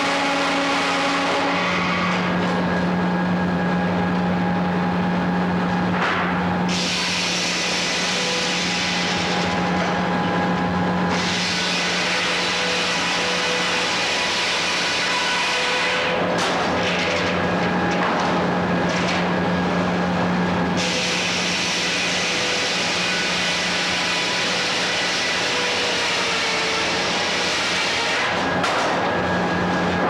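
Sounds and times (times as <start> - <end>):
constant low hum: 0.0 - 13.8
circular sawmill running: 0.0 - 30.0.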